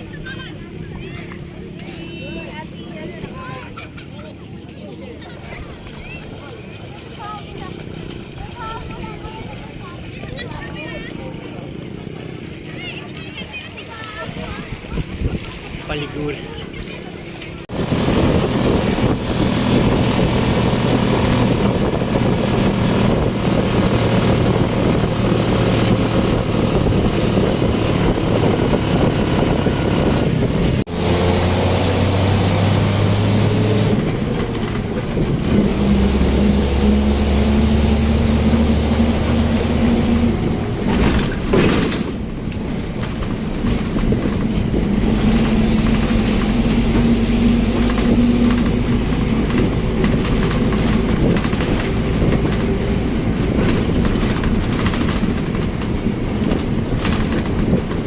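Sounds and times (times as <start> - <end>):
constant rushing noise: 0.0 - 58.0
atv engine running: 5.3 - 58.0.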